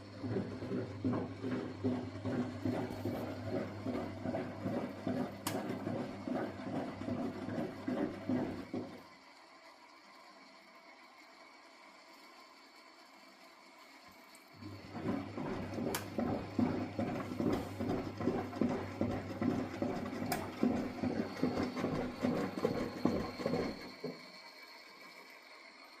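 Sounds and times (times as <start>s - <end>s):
washing machine drum swishing and knocking: 0.0s - 9.1s, 14.6s - 24.4s
washing machine motor humming: 0.0s - 26.0s.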